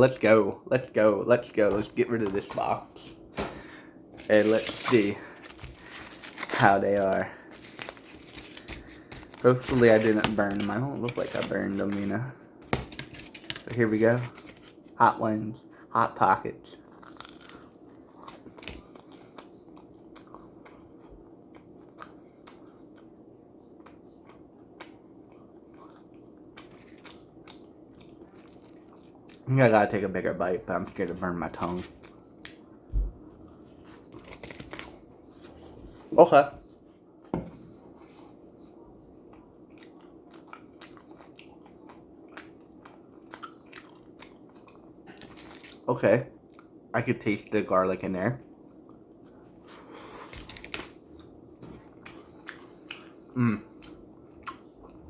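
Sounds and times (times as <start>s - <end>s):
low steady hum: 0.0s - 55.0s
person chewing: 16.8s - 29.4s, 39.2s - 45.8s, 48.6s - 55.0s.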